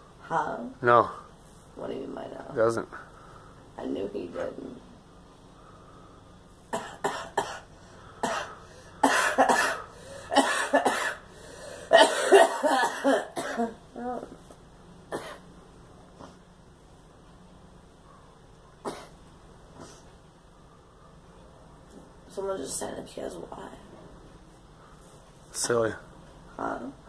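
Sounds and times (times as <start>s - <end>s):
girl coughing: 6.7s - 11.2s, 11.9s - 13.8s, 15.1s - 15.4s, 18.8s - 19.2s.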